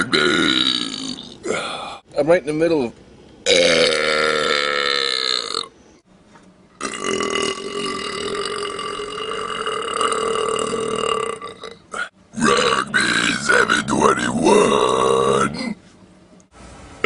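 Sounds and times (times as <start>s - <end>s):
man belching loudly: 0.0s - 2.0s, 3.4s - 5.7s, 6.8s - 15.8s.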